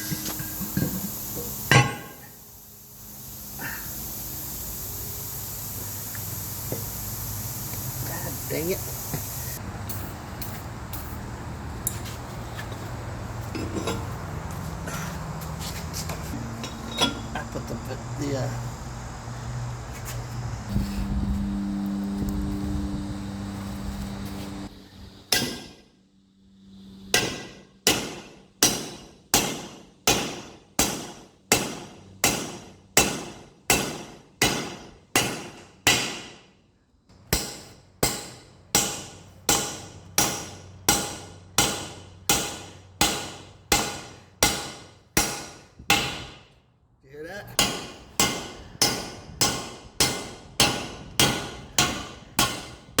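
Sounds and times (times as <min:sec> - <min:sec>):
hammer striking metal: 0:00.0 - 0:02.4, 0:25.3 - 0:25.8, 0:27.1 - 0:36.4, 0:37.3 - 0:46.5, 0:47.6 - 0:52.8
steady hum: 0:00.0 - 0:11.6, 0:16.2 - 0:27.4.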